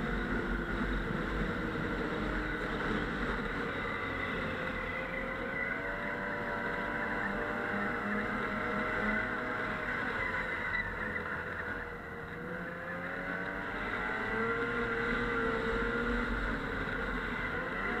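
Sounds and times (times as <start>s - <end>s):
snowmobile engine running: 0.0s - 10.2s.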